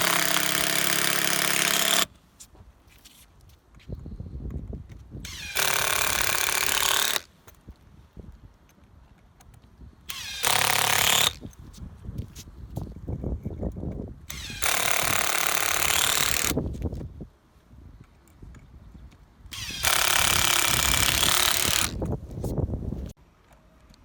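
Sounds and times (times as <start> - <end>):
power drill running: 0.0 - 2.1, 5.2 - 7.2, 10.1 - 11.4, 14.3 - 16.6, 19.5 - 22.0.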